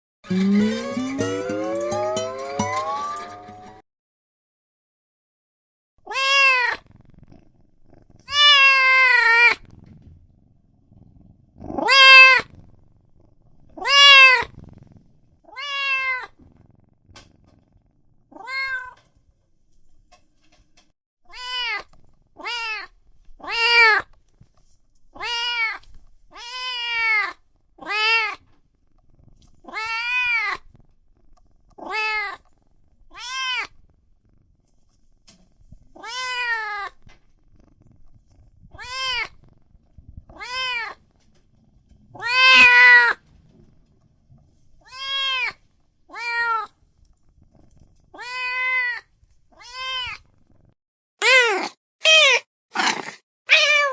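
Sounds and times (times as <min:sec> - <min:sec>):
cat meowing: 0:06.1 - 0:06.8, 0:08.3 - 0:09.6, 0:11.8 - 0:12.4, 0:13.8 - 0:14.5, 0:15.5 - 0:16.3, 0:18.4 - 0:19.0, 0:21.3 - 0:21.8, 0:22.4 - 0:24.0, 0:25.2 - 0:28.4, 0:29.7 - 0:30.6, 0:31.8 - 0:32.4, 0:33.1 - 0:33.7, 0:36.0 - 0:37.0, 0:38.8 - 0:39.3, 0:40.4 - 0:41.0, 0:42.2 - 0:43.2, 0:44.9 - 0:46.7, 0:48.2 - 0:49.0, 0:49.6 - 0:50.2, 0:51.2 - 0:52.5, 0:53.5 - 0:53.9.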